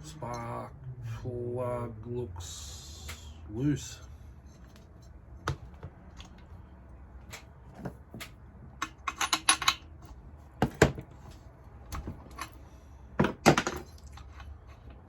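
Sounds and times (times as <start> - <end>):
metal tools clinking on workbench: 8.8 - 9.8.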